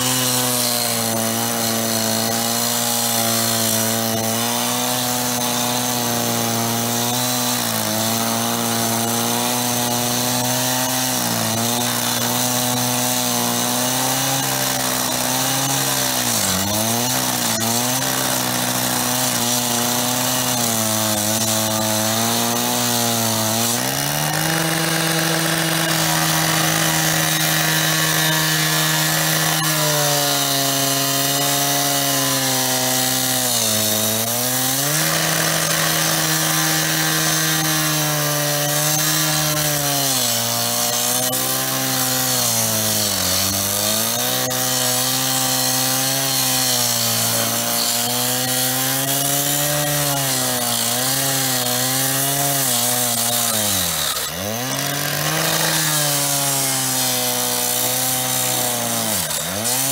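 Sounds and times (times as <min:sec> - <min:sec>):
power saw cutting: 0:00.0 - 0:59.9.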